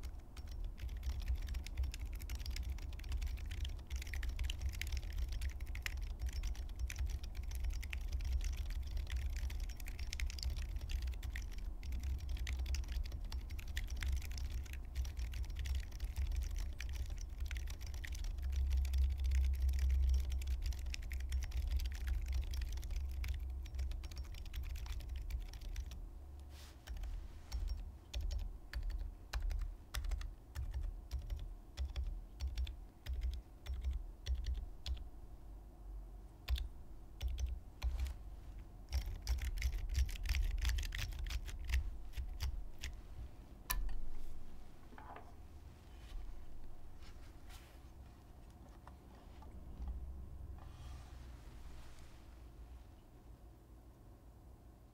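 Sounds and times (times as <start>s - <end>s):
typing on mechanical keyboard: 0.0s - 26.0s, 26.8s - 35.0s, 36.5s - 38.2s, 38.9s - 43.0s.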